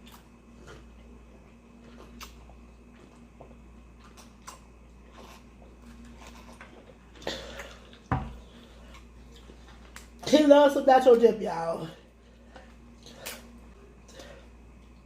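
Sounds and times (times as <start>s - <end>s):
wet chewing: 1.8s - 10.2s.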